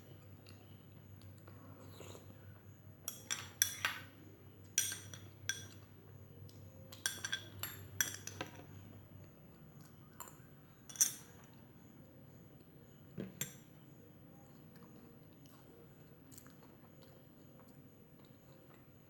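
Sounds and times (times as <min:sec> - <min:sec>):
cutlery clinking against dishes: 0:03.1 - 0:04.1, 0:04.8 - 0:05.8, 0:06.9 - 0:08.6, 0:10.9 - 0:11.4.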